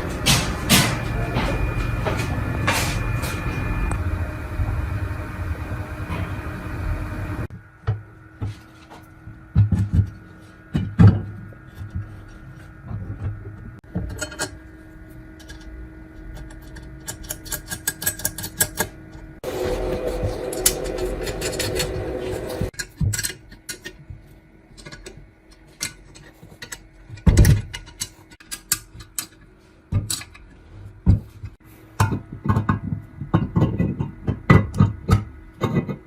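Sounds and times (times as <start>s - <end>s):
workshop machine running: 0.0s - 7.5s, 15.2s - 22.8s
metal parts knocking and clicking: 16.4s - 18.9s, 20.5s - 24.0s, 24.7s - 30.5s.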